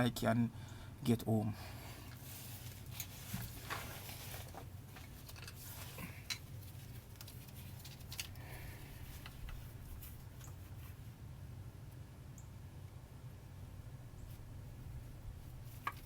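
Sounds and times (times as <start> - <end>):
low steady hum: 0.0 - 16.0
handling clicks and rustles: 2.1 - 11.1, 15.4 - 16.0.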